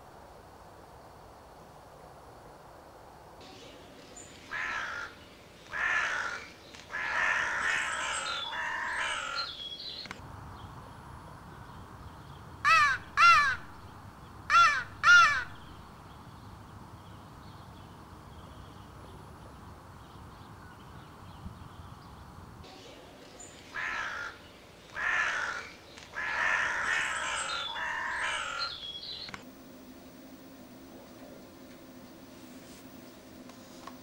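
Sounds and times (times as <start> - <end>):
crow call caws: 4.5 - 9.5, 12.6 - 13.7, 14.5 - 15.6, 23.7 - 28.8.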